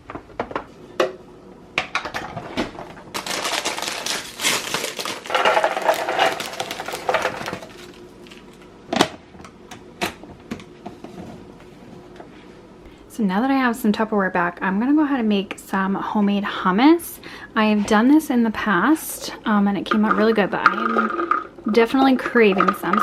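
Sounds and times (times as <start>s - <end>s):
snack pieces rattling into container: 3.1s - 8.6s.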